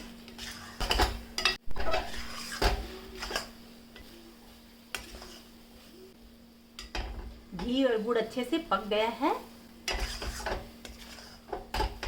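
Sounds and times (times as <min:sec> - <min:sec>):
utensil scraping a pan: 0:00.0 - 0:03.6, 0:04.9 - 0:05.6, 0:09.9 - 0:12.0
faint steady hum: 0:00.0 - 0:12.0.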